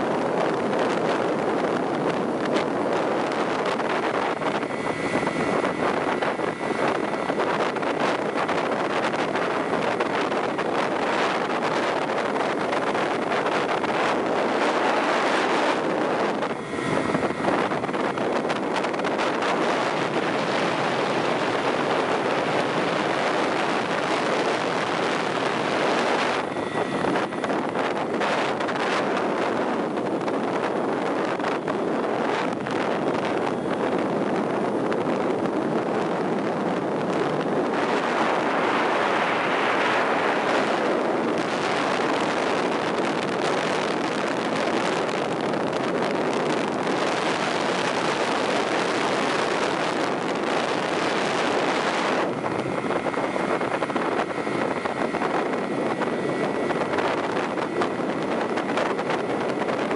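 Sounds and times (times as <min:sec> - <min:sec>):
car road and wind noise: 0:00.0 - 0:59.9.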